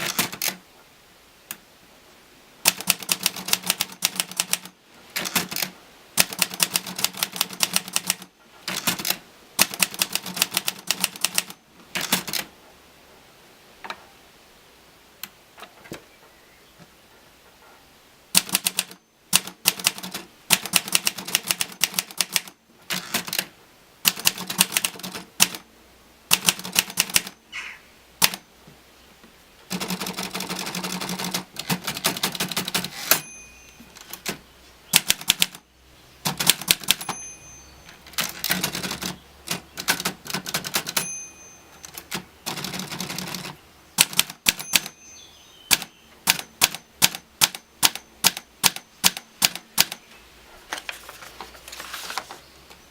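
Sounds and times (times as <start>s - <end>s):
manual typewriter typing: 0.0s - 0.6s, 2.6s - 12.5s, 18.3s - 25.6s, 26.3s - 27.4s, 28.2s - 28.4s, 29.7s - 35.6s, 36.2s - 45.0s, 45.7s - 50.0s
typewriter bell ringing: 32.3s - 34.3s, 36.5s - 39.1s, 40.6s - 43.5s, 44.3s - 49.0s.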